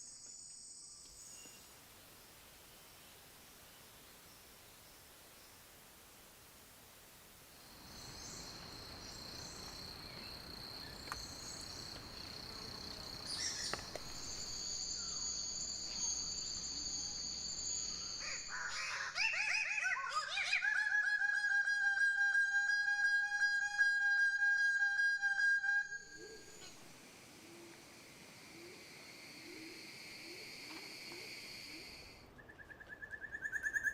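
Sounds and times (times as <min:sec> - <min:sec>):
steady high-pitched whine: 0:00.0 - 0:19.3, 0:20.6 - 0:32.4
buzzy bird call: 0:17.9 - 0:26.8.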